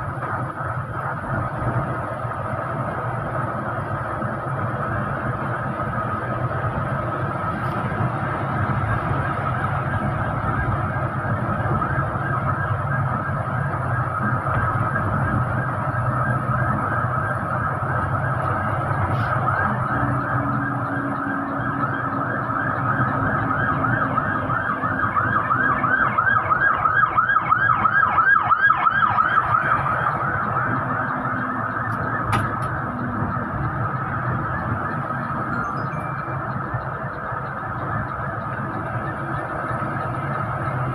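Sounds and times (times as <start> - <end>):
rapid siren-like warble: 0.0 - 40.9
vehicle running on road: 0.0 - 40.9
steady high tone: 29.3 - 40.9.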